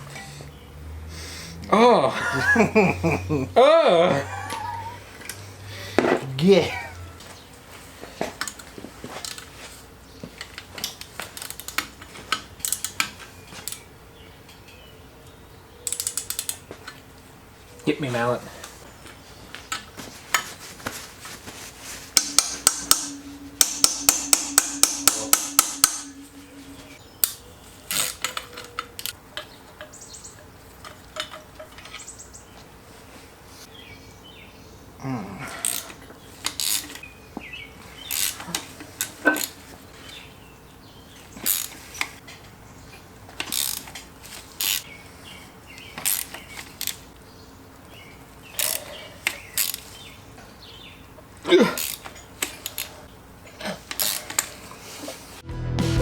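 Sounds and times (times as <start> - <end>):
sharp metallic clicks: 15.8 - 16.6, 22.2 - 29.5
metal knocks and clinks: 22.2 - 27.0.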